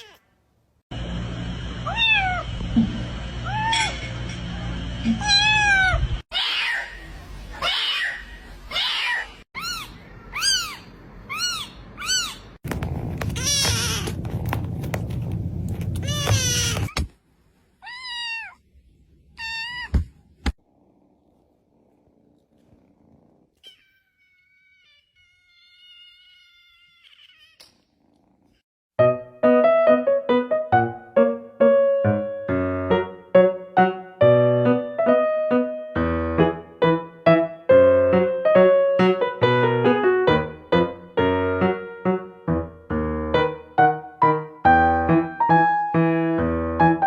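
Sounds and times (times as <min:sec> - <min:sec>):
cat meowing: 0:13.2 - 0:14.2, 0:16.0 - 0:17.0, 0:17.8 - 0:18.6, 0:23.6 - 0:27.7
loud piano music: 0:29.0 - 0:47.0.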